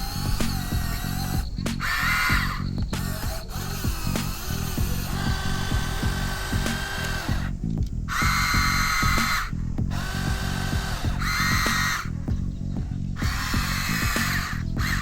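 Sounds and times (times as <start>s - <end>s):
electric motor whine: 0.0s - 12.2s
background music with beat: 0.0s - 15.0s.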